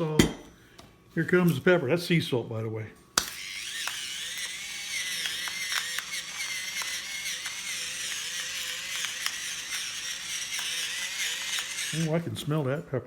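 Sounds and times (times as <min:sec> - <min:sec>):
sharp grinding clicks: 0:03.2 - 0:12.1
electric pepper grinder whirring: 0:03.2 - 0:12.2.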